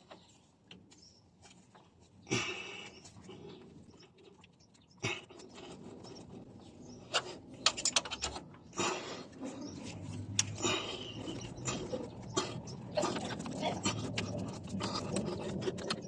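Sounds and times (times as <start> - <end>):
metal clinks and scrapes: 7.1 - 8.5.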